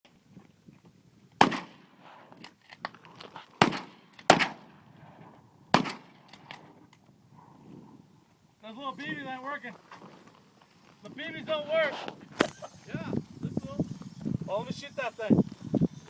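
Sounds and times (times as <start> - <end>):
bb gun shots: 1.4 - 1.8, 3.6 - 4.7, 5.7 - 6.2.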